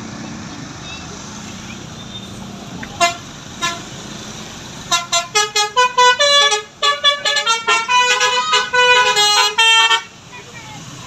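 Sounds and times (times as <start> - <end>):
musical air horn melody: 3.0 - 3.8, 4.9 - 10.1.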